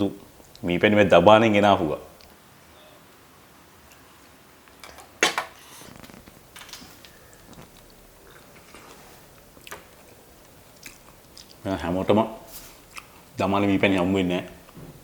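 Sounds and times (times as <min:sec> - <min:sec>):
eating sounds: 0:07.0 - 0:11.8, 0:12.8 - 0:13.4
soft rustling: 0:12.4 - 0:13.2.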